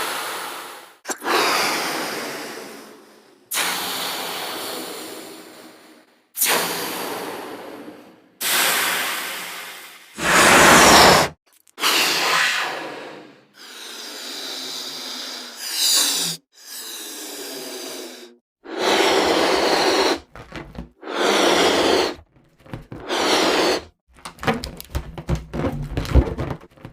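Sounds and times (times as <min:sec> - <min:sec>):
hissing bursts of rushing air: 0:08.4 - 0:12.8, 0:23.0 - 0:23.9
clicks and knocks: 0:24.2 - 0:26.9.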